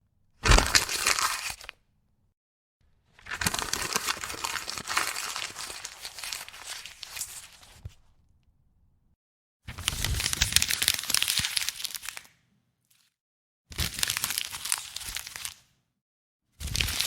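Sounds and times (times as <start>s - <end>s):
paper being crumpled: 0.4s - 1.8s, 3.2s - 8.0s, 9.8s - 12.3s, 13.8s - 15.6s.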